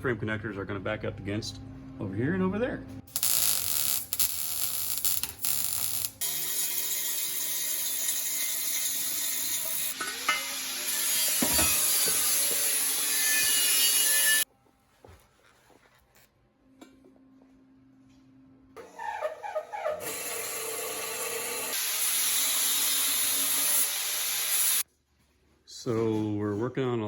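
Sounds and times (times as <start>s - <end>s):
welding arc crackling: 3.1s - 6.6s.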